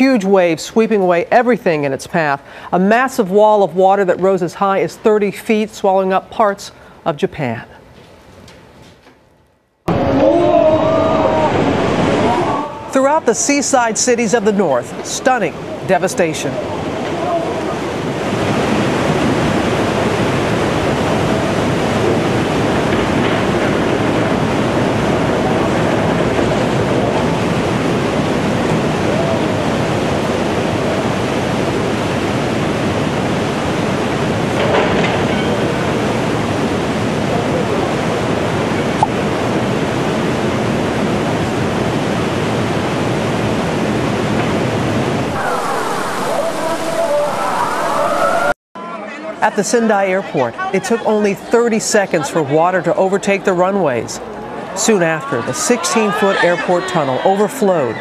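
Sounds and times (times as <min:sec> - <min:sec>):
floodwater rushing: 0:09.9 - 0:48.6.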